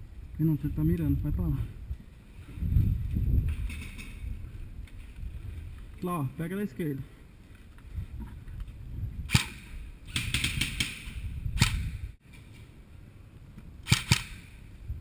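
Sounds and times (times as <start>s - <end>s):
airsoft gun shots: 9.3s - 12.0s, 13.8s - 14.6s.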